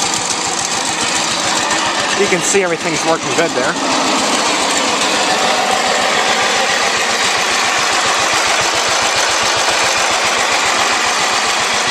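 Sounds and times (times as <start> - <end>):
small tractor engine running: 0.0 - 11.9.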